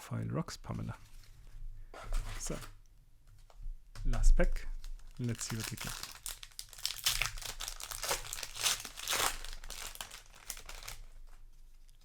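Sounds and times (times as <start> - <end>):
plastic wrapper crinkling and tearing: 4.7 - 12.0.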